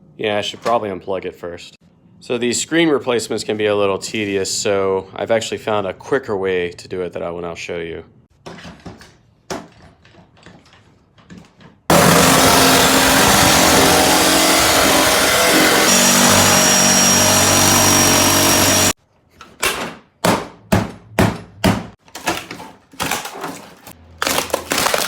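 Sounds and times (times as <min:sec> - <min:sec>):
high whine: 0:11.9 - 0:19.0
motor-driven tool running: 0:11.9 - 0:19.0.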